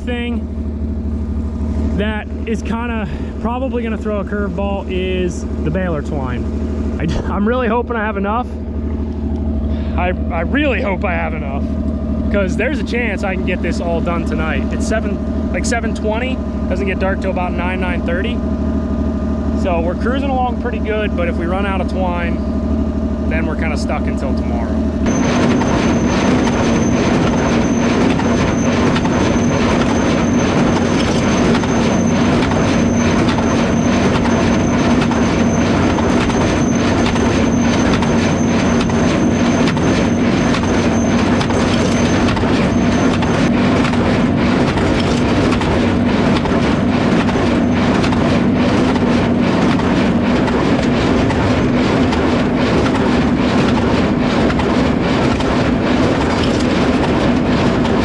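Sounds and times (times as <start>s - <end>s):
tractor engine running: 0.0s - 58.0s
baler mechanism clicking: 25.0s - 58.0s.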